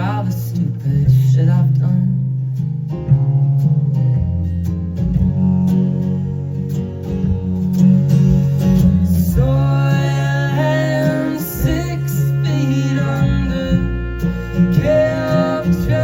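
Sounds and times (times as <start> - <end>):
steady bass: 0.0 - 16.0
strummed acoustic guitar: 0.0 - 16.0
melodic lead line: 7.5 - 16.0.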